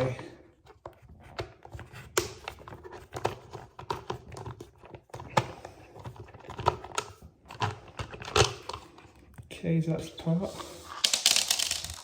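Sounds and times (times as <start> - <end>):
plastic clicks and knocks: 0.7 - 8.8.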